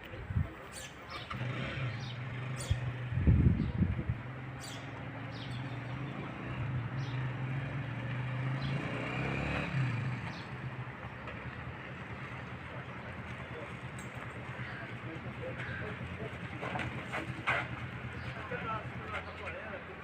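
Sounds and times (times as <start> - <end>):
street noise: 0.0 - 20.0
car engine running: 10.2 - 20.0.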